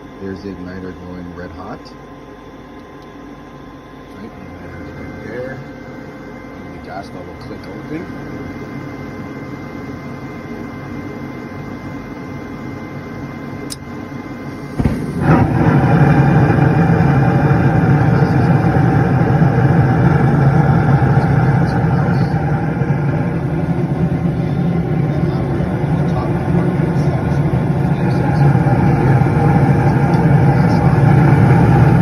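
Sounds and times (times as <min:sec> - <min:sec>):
draft inducer motor humming: 0:00.0 - 0:32.0
burner low rush: 0:14.6 - 0:32.0
burners igniting with a thump: 0:14.6 - 0:32.0.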